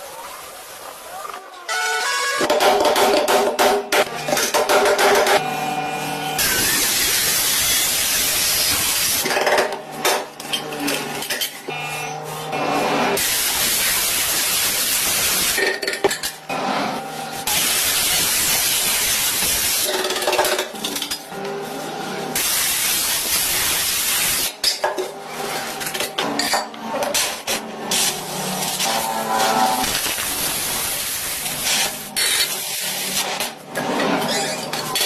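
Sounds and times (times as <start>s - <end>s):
spray paint hissing: 13.2s - 15.6s, 17.5s - 19.9s, 22.4s - 24.6s.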